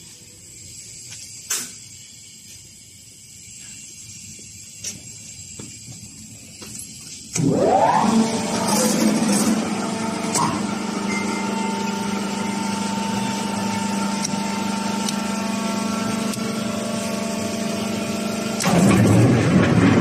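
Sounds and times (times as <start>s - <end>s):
electric motor humming: 7.4s - 19.0s.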